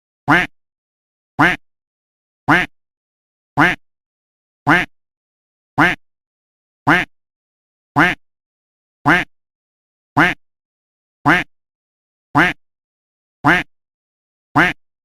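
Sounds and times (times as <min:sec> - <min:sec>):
duck quacking: 0:00.3 - 0:00.5, 0:01.4 - 0:01.6, 0:02.5 - 0:02.7, 0:03.6 - 0:03.8, 0:04.7 - 0:04.9, 0:05.8 - 0:06.0, 0:06.9 - 0:07.1, 0:08.0 - 0:08.2, 0:09.1 - 0:09.3, 0:10.2 - 0:10.4, 0:11.3 - 0:11.5, 0:12.4 - 0:12.6, 0:13.4 - 0:13.7, 0:14.6 - 0:14.8.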